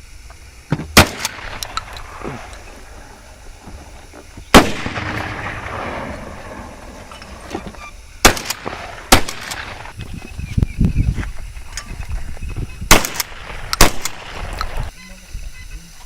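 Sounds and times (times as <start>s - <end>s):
shotgun shots echoing: 0.9s - 2.2s, 4.5s - 7.0s, 8.2s - 9.9s, 12.9s - 14.6s.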